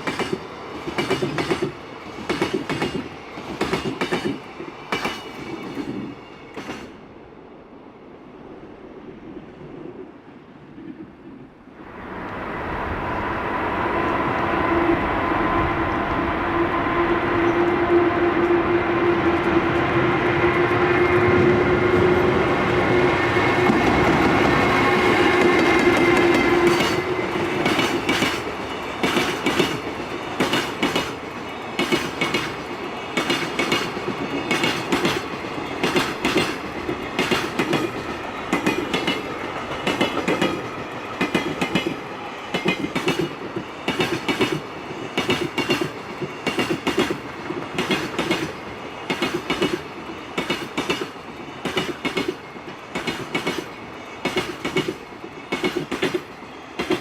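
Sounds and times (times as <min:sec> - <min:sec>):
train wheels clacking over rail joints: 0:00.0 - 0:07.0, 0:20.9 - 0:57.0.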